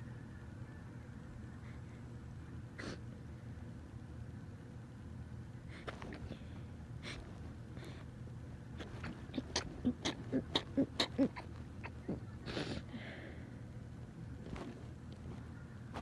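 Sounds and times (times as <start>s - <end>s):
person sneezing: 12.4s - 12.9s.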